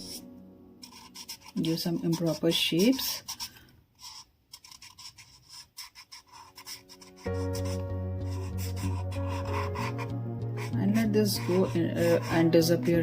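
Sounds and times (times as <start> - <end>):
marker scratching on paper: 0.0 - 0.2, 0.8 - 13.0
background music with held notes: 0.0 - 1.1, 6.6 - 13.0.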